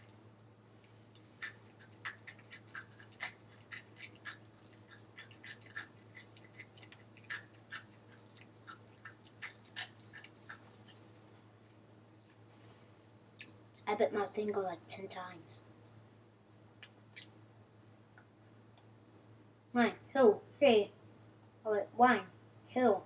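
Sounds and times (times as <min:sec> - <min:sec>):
crunchy snacks being chewed: 0:01.1 - 0:11.1.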